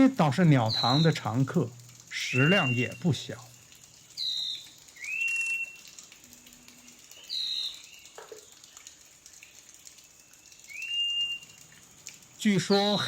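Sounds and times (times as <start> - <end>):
bird whistling calls: 0.7 - 1.3, 2.2 - 3.2, 4.2 - 5.9, 7.2 - 8.2, 10.2 - 11.6, 12.6 - 13.0.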